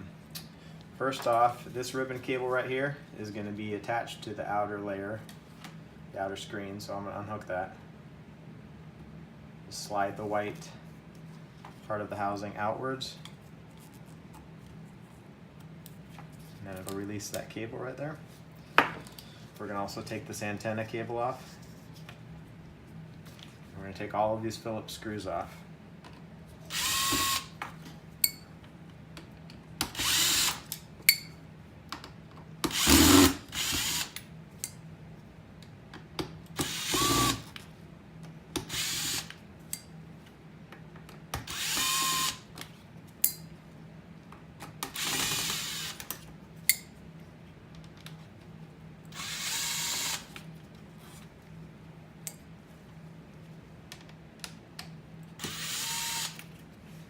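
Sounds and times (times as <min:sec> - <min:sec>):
power screwdriver whirring: 0:26.7 - 0:27.5, 0:30.0 - 0:30.7, 0:32.7 - 0:34.2, 0:36.6 - 0:37.5, 0:38.6 - 0:39.4, 0:41.5 - 0:42.4, 0:44.9 - 0:46.1, 0:49.2 - 0:50.4, 0:55.4 - 0:56.5.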